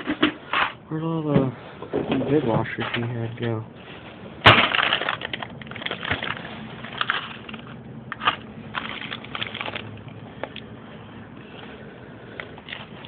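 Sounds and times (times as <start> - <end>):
objects rattling and clicking: 4.4 - 10.7, 12.4 - 13.0.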